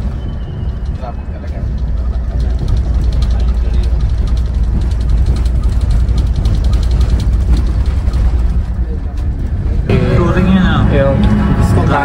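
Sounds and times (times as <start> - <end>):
bus diesel engine rumble: 0.0 - 12.0
road noise: 0.0 - 12.0
fast rattling tick: 0.6 - 9.4.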